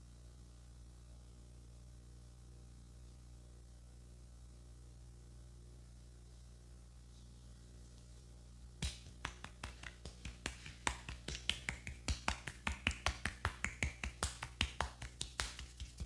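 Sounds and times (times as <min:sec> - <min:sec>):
hands tapping on head: 0:08.8 - 0:16.0.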